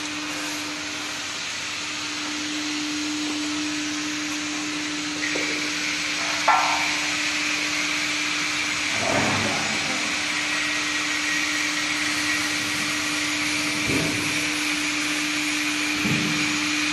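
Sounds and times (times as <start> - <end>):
machinery hum and whine: 0.0 - 16.9
sharp knocks: 6.2 - 7.0.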